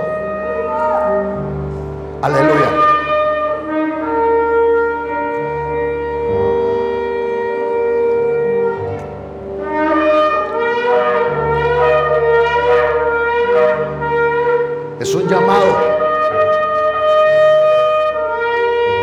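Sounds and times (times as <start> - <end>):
shofar blasts: 15.0 - 16.6.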